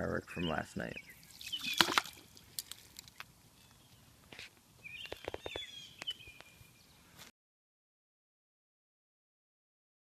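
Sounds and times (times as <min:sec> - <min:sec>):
bird chirping: 0:00.0 - 0:02.5, 0:03.5 - 0:07.2.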